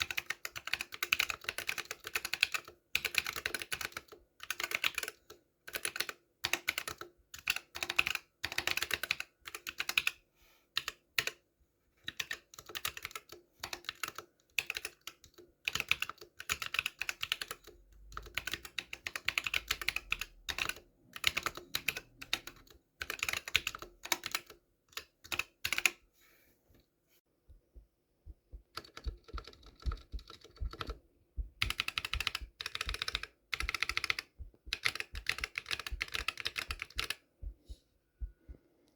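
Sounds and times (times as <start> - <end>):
mechanical keyboard key clacks: 31.6 - 37.2.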